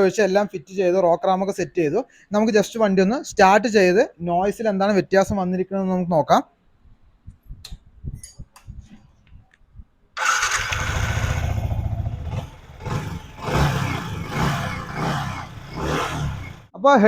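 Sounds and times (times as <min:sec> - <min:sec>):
engine revving: 0:10.2 - 0:16.7
motorcycle engine starting and idling: 0:10.2 - 0:16.7.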